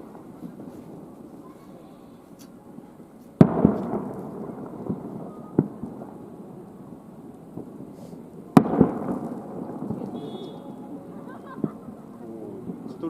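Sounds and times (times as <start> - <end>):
firework shells bursting: 3.3 - 13.0.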